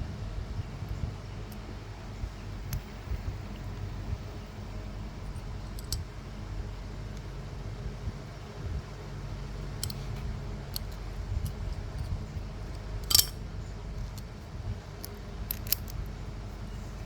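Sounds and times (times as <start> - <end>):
steady low hum: 0.0 - 17.0
metal tools clinking: 13.0 - 13.4, 15.0 - 16.0.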